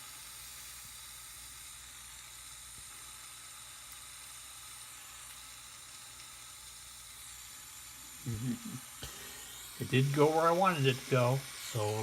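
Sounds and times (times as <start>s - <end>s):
soldering torch flame hissing: 0.0s - 12.0s.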